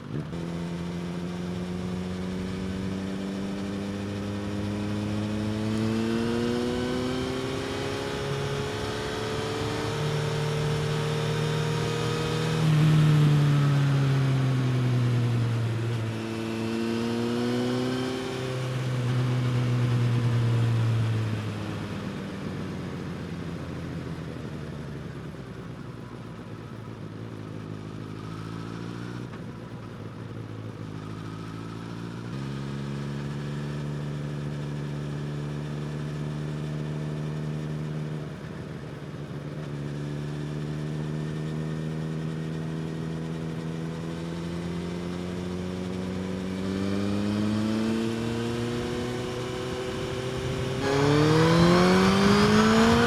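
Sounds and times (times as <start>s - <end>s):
motorcycle engine revving: 0.0s - 21.5s, 39.3s - 53.0s.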